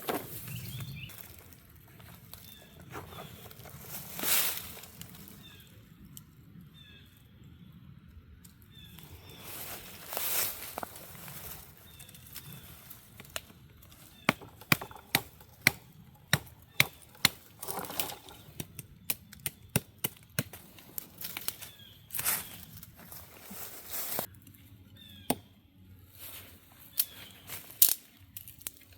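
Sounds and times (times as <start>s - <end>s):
rustling: 0.0s - 5.7s, 9.0s - 15.2s, 20.4s - 24.4s.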